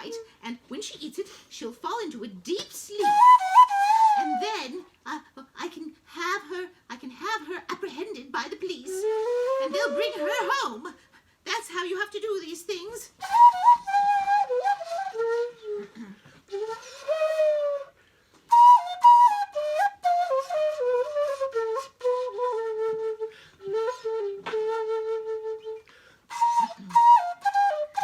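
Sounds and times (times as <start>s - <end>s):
flute-like melody: 3.0s - 4.6s, 8.9s - 10.8s, 13.2s - 28.0s.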